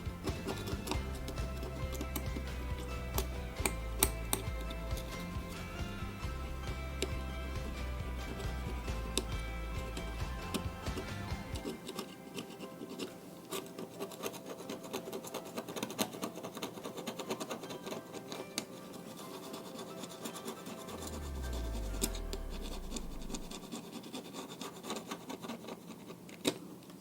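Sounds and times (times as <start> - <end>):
low hum falling in pitch: 20.9 - 23.7.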